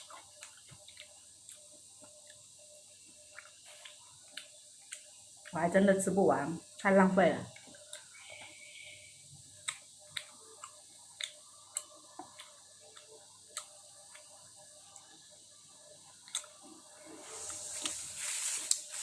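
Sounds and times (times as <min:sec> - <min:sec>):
soft wet chewing: 0:00.0 - 0:05.7, 0:07.5 - 0:18.0
airy hiss: 0:16.9 - 0:19.0.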